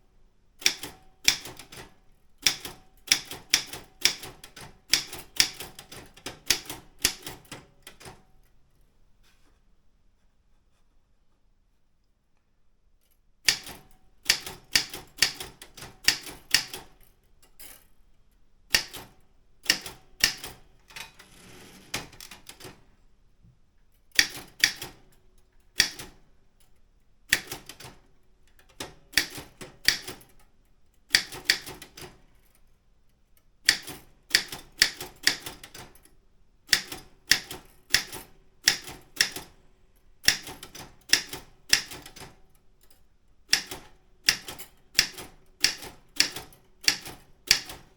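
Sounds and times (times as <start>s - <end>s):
typewriter keystrokes: 0.6s - 8.2s, 13.5s - 17.0s, 18.7s - 22.9s, 24.2s - 25.1s, 25.8s - 26.2s, 27.3s - 28.0s, 28.6s - 30.4s, 31.1s - 32.2s, 33.7s - 36.0s, 36.7s - 39.6s, 40.2s - 42.4s, 43.5s - 47.9s
quiet rasping sound: 9.2s - 12.0s, 20.9s - 22.3s.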